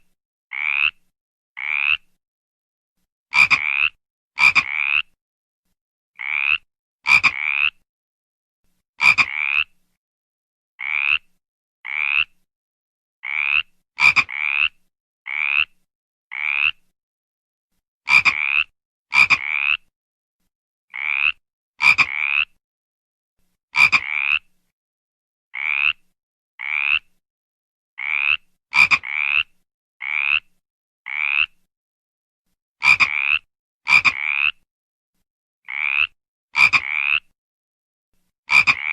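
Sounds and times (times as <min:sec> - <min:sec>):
frog croaking: 0:00.5 - 0:01.0, 0:01.6 - 0:02.1, 0:03.3 - 0:05.2, 0:06.2 - 0:07.8, 0:09.0 - 0:09.8, 0:10.8 - 0:12.4, 0:13.2 - 0:16.8, 0:18.1 - 0:19.9, 0:20.9 - 0:22.6, 0:23.8 - 0:24.5, 0:25.6 - 0:26.0, 0:26.6 - 0:27.1, 0:28.0 - 0:30.5, 0:31.1 - 0:31.6, 0:32.8 - 0:34.6, 0:35.7 - 0:37.3, 0:38.5 - 0:38.9.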